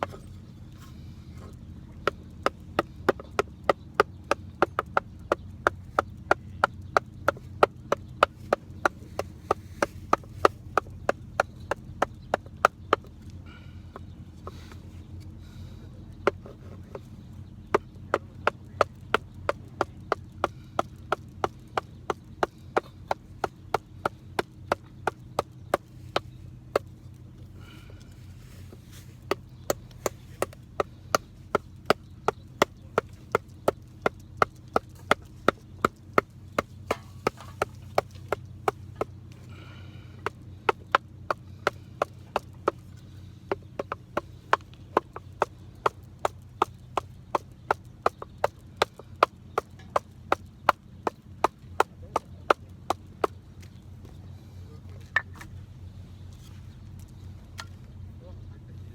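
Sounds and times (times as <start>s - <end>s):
baton knocking knife through wood: 32.6s - 38.8s.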